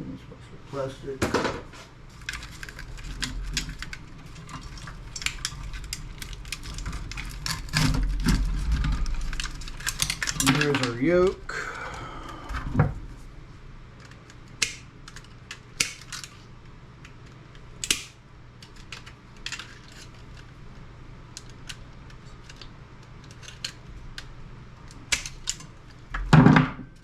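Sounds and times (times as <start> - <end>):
plastic and metal parts clicking: 2.2 - 11.0.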